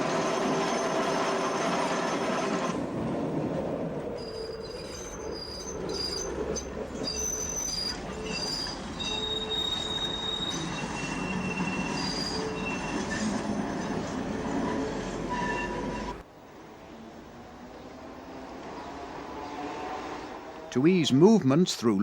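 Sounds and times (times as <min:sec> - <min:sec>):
high wheel squeals: 0:00.0 - 0:01.9, 0:04.2 - 0:16.2
tram rumbling on rails: 0:00.0 - 0:22.0.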